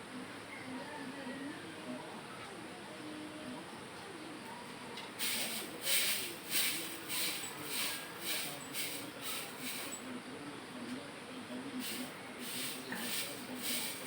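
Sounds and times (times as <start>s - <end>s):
broom sweeping: 5.2s - 10.1s, 11.8s - 14.0s.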